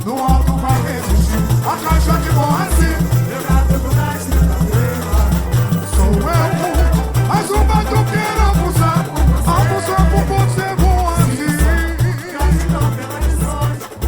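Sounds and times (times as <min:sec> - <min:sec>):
shakers: 0:00.0 - 0:14.0
melodic line: 0:01.4 - 0:11.4.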